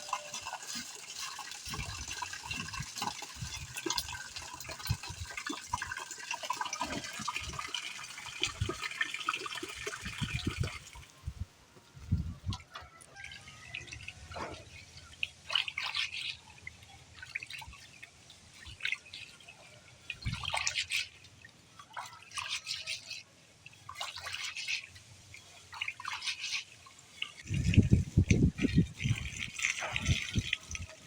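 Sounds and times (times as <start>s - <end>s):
water splashing and dripping: 0.0s - 11.4s, 12.0s - 31.0s.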